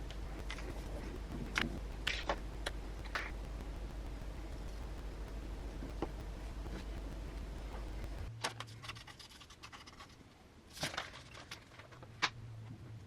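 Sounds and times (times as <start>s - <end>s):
handling clicks and scratching: 0.0s - 3.7s, 4.6s - 12.4s
low hum: 0.0s - 8.8s.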